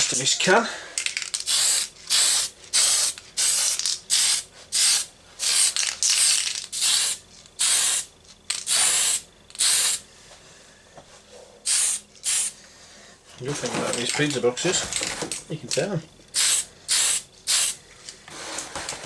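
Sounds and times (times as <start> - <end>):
aerosol can spraying: 1.4 - 10.0, 11.7 - 12.6, 16.4 - 17.8.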